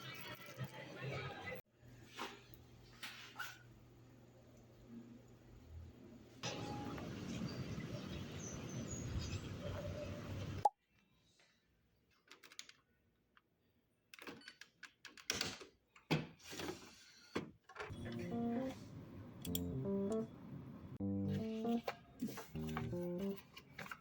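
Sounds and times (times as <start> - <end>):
soft plucked-string music: 19.5 - 20.3, 21.0 - 21.9, 22.6 - 23.4.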